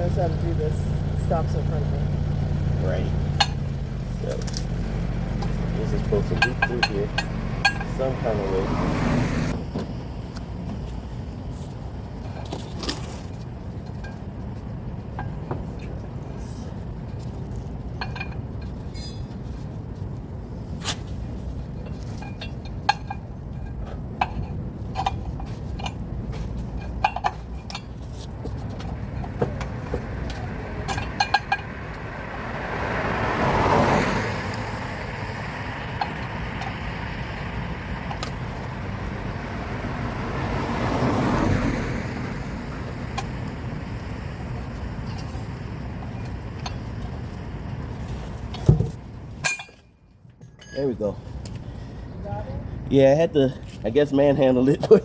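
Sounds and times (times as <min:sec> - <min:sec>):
metal tools clinking and rattling: 0:00.0 - 0:08.6, 0:21.7 - 0:32.0, 0:50.4 - 0:51.1
vehicle passing: 0:00.0 - 0:09.7, 0:25.5 - 0:49.0
low traffic rumble: 0:00.0 - 0:55.0.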